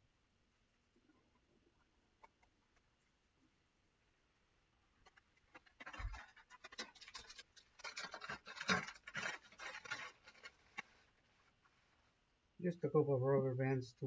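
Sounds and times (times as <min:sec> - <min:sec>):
rubber bands rustling and clicking: 0:05.0 - 0:11.8.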